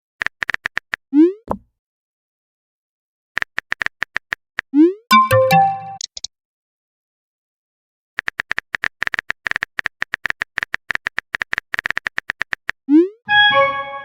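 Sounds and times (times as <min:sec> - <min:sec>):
phone keyboard typing clicks: 0:03.4 - 0:04.4, 0:08.2 - 0:12.8
electronic message chime: 0:05.1 - 0:06.0.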